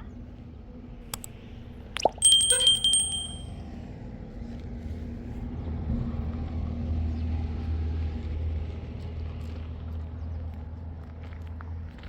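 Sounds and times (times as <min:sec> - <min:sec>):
metallic bell-like ring: 0:02.2 - 0:03.5.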